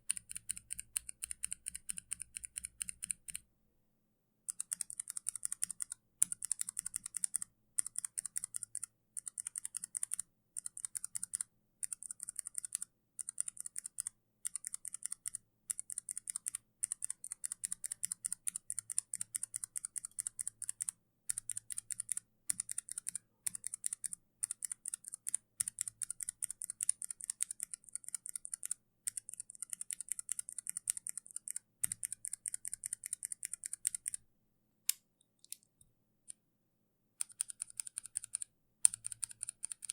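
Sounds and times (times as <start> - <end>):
mechanical keyboard key clicks: 37.2 - 39.9.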